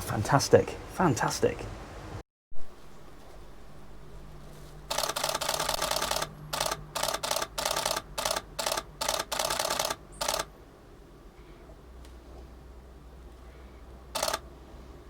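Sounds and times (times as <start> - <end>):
camera shutter clicking in bursts: 4.9 - 10.5, 14.2 - 14.5.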